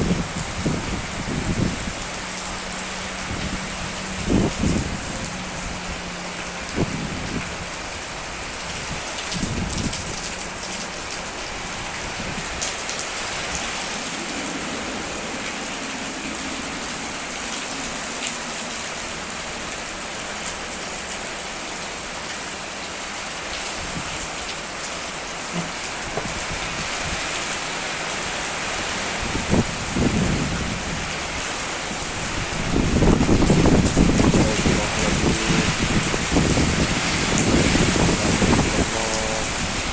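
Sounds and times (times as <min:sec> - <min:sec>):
wind gusts buffeting microphone: 0:00.0 - 0:18.7, 0:25.9 - 0:27.5, 0:28.6 - 0:39.9
heavy rain falling: 0:00.0 - 0:39.9.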